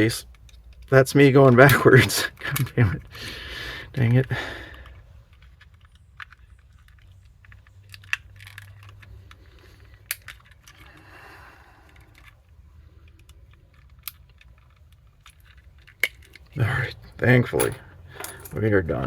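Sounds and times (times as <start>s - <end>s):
quiet handling noise: 0.0s - 3.2s, 3.9s - 19.0s
plastic switch parts clicking: 4.0s - 11.1s, 11.8s - 18.6s.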